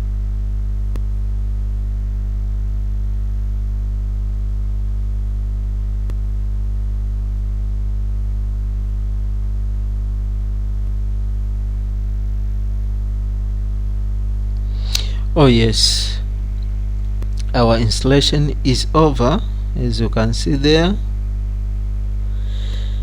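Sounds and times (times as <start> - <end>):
low electrical hum: 0.0 - 23.0.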